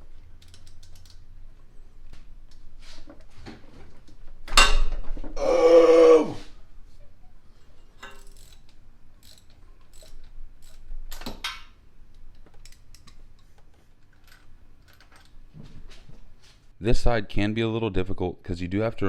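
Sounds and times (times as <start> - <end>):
ratchet clicks: 0.4 - 1.3, 8.0 - 11.3, 12.1 - 15.4.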